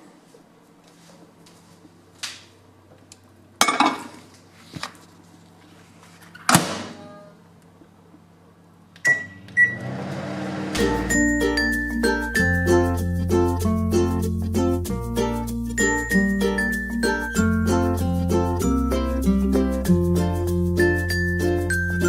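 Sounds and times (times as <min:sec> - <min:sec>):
microwave oven humming: 0:07.1 - 0:11.8
short keypad beeps: 0:09.0 - 0:09.8.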